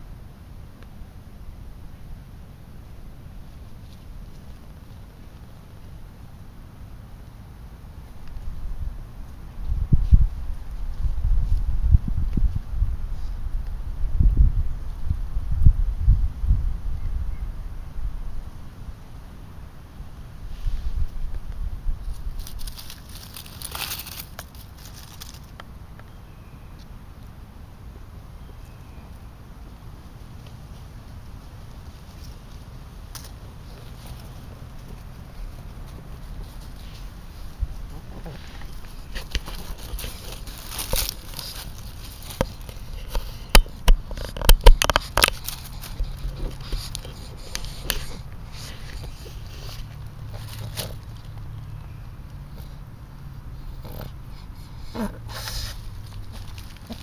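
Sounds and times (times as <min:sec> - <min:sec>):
low wind rumble: 0:00.0 - 0:57.0
close crackling and rustling: 0:03.3 - 0:06.2, 0:20.4 - 0:26.1, 0:29.1 - 0:52.9, 0:53.6 - 0:57.0.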